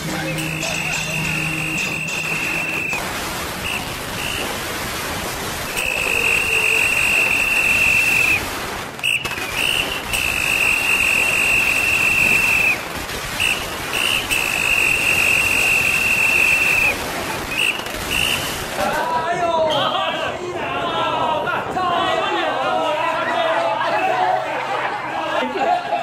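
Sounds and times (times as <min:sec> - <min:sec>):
high whistle-like tones: 0:00.0 - 0:03.0, 0:03.6 - 0:04.5, 0:05.7 - 0:08.4, 0:09.0 - 0:12.8, 0:13.4 - 0:18.5
steady rushing noise: 0:00.0 - 0:19.4
short chirps: 0:00.4 - 0:03.0.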